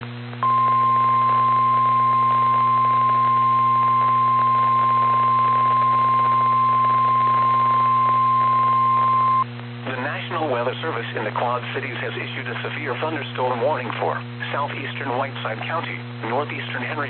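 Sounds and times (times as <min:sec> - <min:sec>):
low hum: 0:00.0 - 0:11.8
radio hiss: 0:09.7 - 0:17.0.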